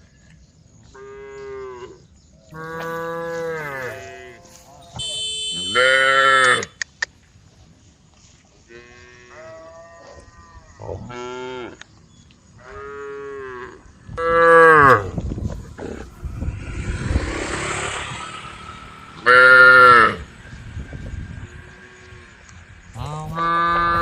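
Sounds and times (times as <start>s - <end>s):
cows mooing: 2.6s - 6.7s, 12.6s - 20.7s, 21.4s - 24.0s
rushing noise: 15.4s - 24.0s.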